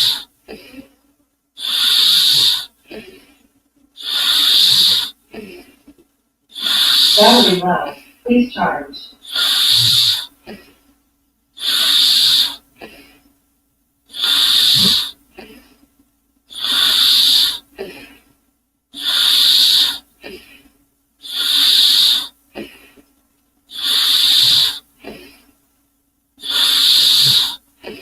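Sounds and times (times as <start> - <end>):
steam engine hissing puffs: 6.6 - 10.2.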